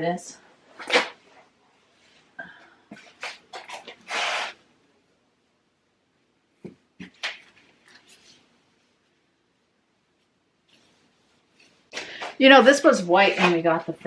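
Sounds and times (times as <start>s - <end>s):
cloth wiping a surface: 7.9s - 11.9s.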